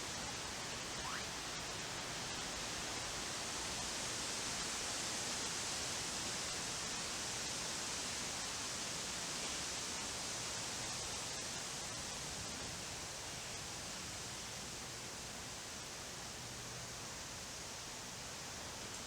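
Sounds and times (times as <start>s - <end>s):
outdoor background hiss: 0.0s - 19.0s
faint rising whistle: 0.9s - 1.3s.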